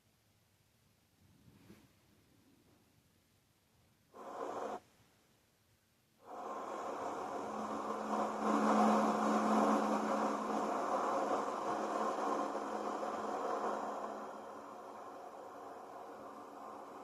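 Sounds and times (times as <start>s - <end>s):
short rush of noise: 6.2s - 17.0s
small motor whirring: 6.2s - 17.0s.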